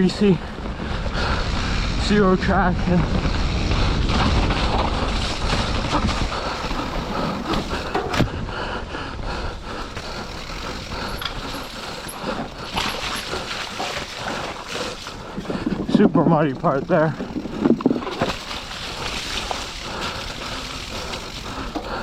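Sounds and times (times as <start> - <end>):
tyres sliding through mud: 0.0 - 8.3, 9.6 - 22.0
bike rattling and knocking: 0.0 - 8.4, 9.4 - 22.0
wind on microphone: 0.0 - 8.6, 13.4 - 18.3.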